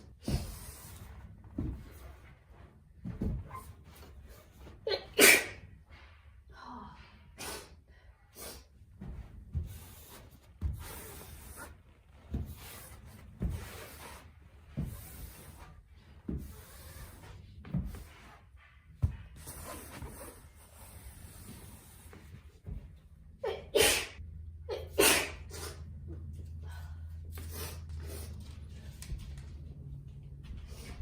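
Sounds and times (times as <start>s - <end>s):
woman sneezing: 4.9s - 5.6s, 23.4s - 25.8s.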